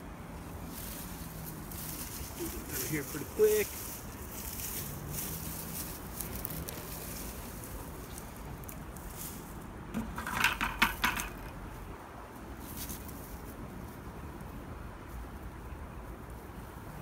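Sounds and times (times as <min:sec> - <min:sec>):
clinking knocks of digging: 0:09.9 - 0:11.5.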